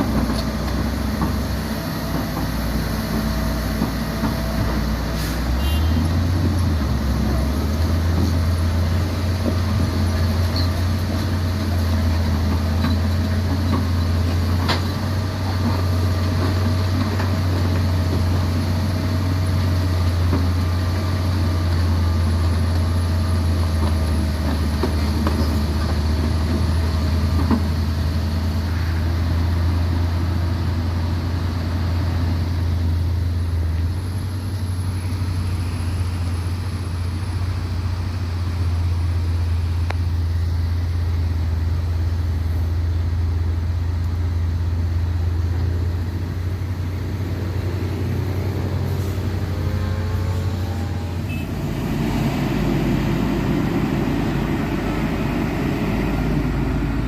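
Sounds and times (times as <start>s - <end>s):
heavy diesel engine revving: 45.0s - 57.0s.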